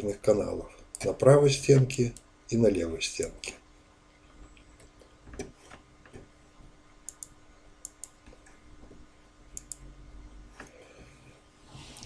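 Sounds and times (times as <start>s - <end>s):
low steady hum: 0.0s - 12.0s
faint irregular clicks: 2.0s - 2.3s, 4.2s - 9.9s.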